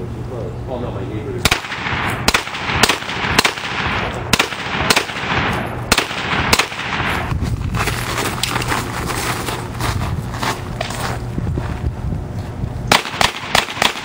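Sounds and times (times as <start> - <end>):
carbine gunshots with echo: 1.4 - 7.3, 12.9 - 14.0.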